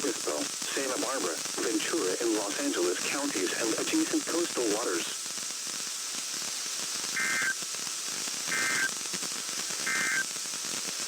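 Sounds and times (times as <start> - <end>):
radio hiss: 0.0 - 11.0
two-tone data bursts: 7.2 - 7.6, 8.5 - 8.9, 9.8 - 10.3.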